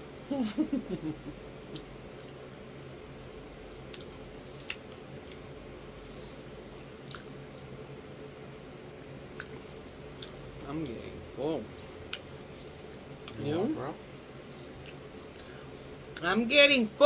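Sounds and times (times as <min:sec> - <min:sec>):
wet chewing with smacks: 0:01.7 - 0:02.4, 0:03.6 - 0:05.5, 0:07.0 - 0:07.7, 0:09.4 - 0:10.4, 0:12.1 - 0:13.4, 0:14.4 - 0:16.2.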